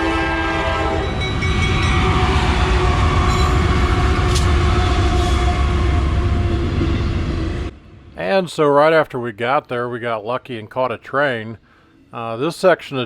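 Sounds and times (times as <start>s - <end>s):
locomotive horn chord: 0.0s - 7.7s
train wheels rumbling on rail: 0.0s - 8.2s.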